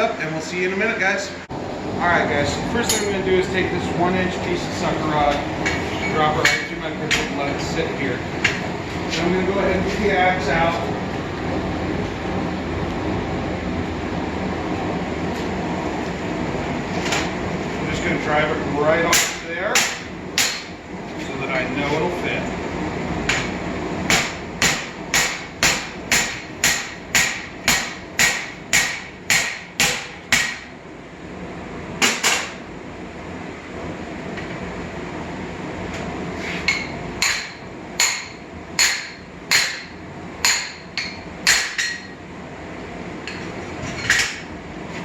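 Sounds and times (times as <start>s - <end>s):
hammer striking hot steel: 2.8s - 3.2s, 6.4s - 7.4s, 19.1s - 20.8s, 23.3s - 30.8s, 36.7s - 42.2s.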